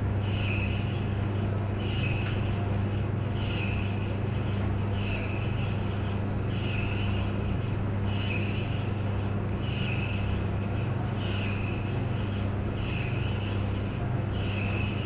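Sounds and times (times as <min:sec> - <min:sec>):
clothes dryer running: 0:00.0 - 0:15.0.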